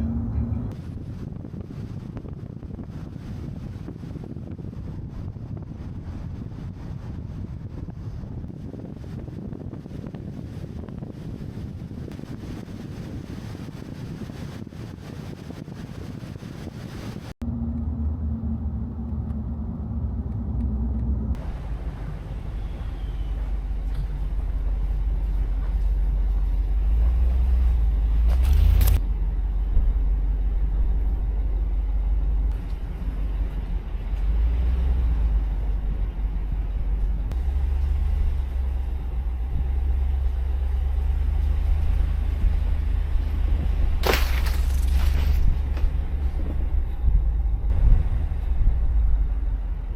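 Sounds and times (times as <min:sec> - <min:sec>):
car engine and tyres rumbling: 0:00.0 - 0:49.9
wind noise hiss: 0:00.7 - 0:17.3.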